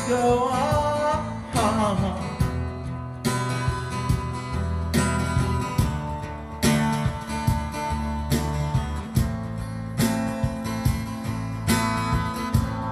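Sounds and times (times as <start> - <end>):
acoustic guitar strumming: 0.0 - 12.9
sustained bass notes: 0.0 - 12.9
drum machine beat: 3.3 - 12.9.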